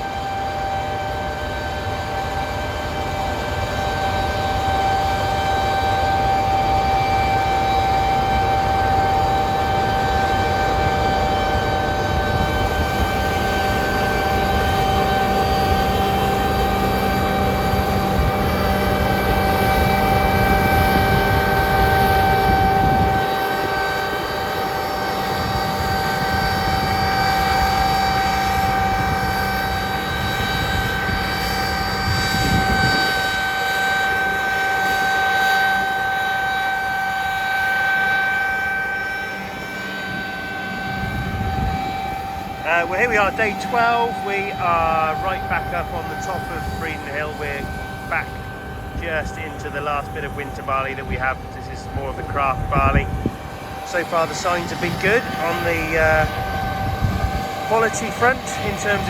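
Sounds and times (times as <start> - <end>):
siren-like machine whine: 0.0 - 59.0
combine harvester rumble: 41.0 - 59.0.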